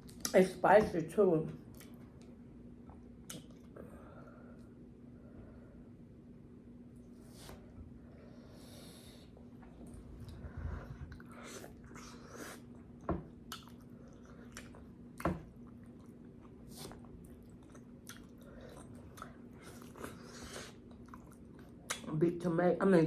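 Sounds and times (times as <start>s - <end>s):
faint steady hum: 0.0s - 23.0s
person chewing and smacking: 1.7s - 2.3s, 2.9s - 3.8s, 11.1s - 22.1s.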